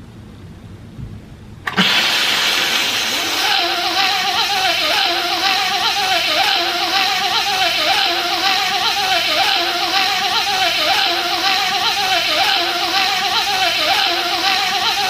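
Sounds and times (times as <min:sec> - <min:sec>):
man imitating bee buzz: 0:03.1 - 0:15.0.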